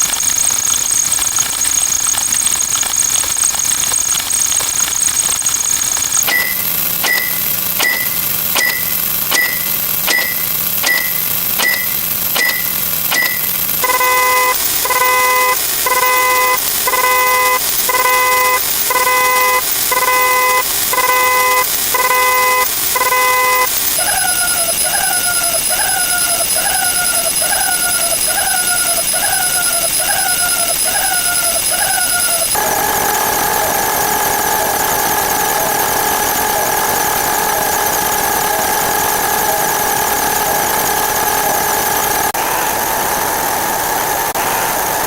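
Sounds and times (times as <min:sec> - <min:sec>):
multi-tone beeps: 0:00.0 - 0:23.8
falling electronic chirp: 0:00.0 - 0:42.4
steady high whine: 0:00.0 - 0:45.0
short high beeps: 0:05.4 - 0:23.7.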